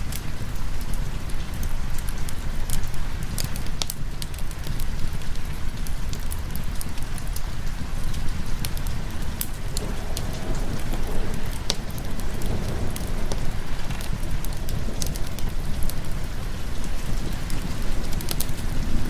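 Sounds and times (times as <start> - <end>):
rain hissing: 0.0 - 19.0
wood fire crackling: 0.0 - 19.0
low rumble: 8.4 - 19.0.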